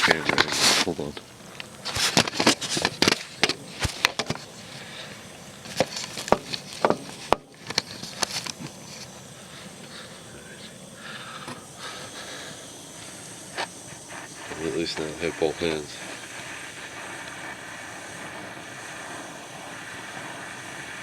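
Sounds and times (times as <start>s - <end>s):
faint steady hiss: 0.0s - 21.0s
camera handling noise: 5.7s - 9.1s.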